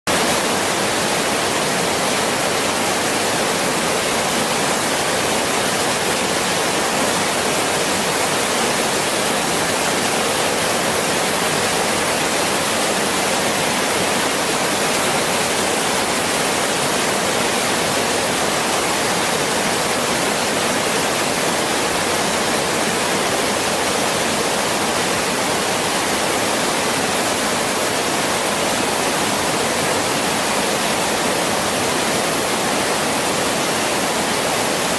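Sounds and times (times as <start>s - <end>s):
waterfall rushing: 0.1s - 34.9s.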